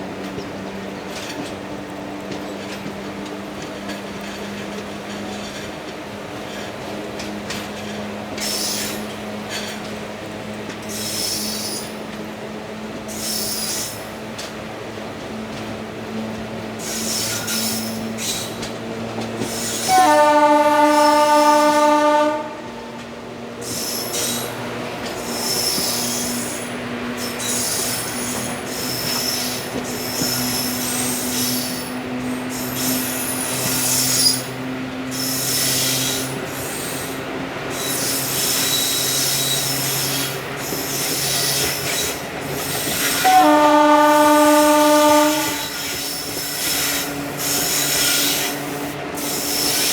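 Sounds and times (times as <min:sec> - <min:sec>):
train coaches rumbling on track: 0:00.0 - 0:49.9
locomotive horn blasts: 0:19.9 - 0:23.0, 0:43.2 - 0:45.9
wheels squealing: 0:23.6 - 0:43.3, 0:45.5 - 0:49.9.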